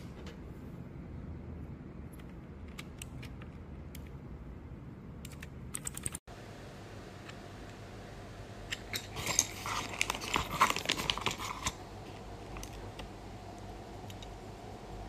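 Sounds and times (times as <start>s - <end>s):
mechanical keyboard keys clicking: 5.2s - 6.2s.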